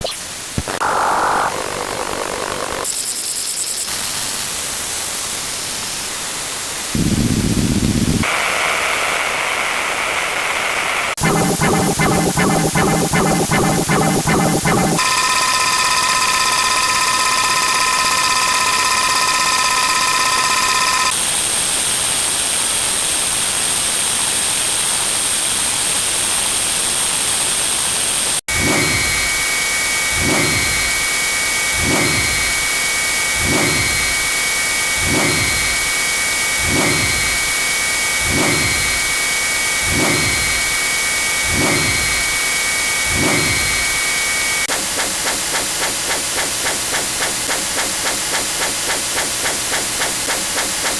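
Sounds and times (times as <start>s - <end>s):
electronic noise hiss: 0.0s - 8.4s, 11.2s - 15.0s, 28.5s - 50.9s
rapid electronic pulsing: 11.2s - 15.1s, 28.5s - 50.9s
steady high-pitched tones: 11.2s - 15.8s, 28.5s - 50.9s.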